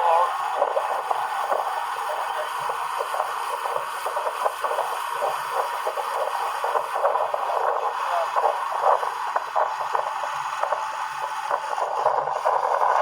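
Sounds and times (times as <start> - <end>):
outboard motor running: 0.0 - 13.0.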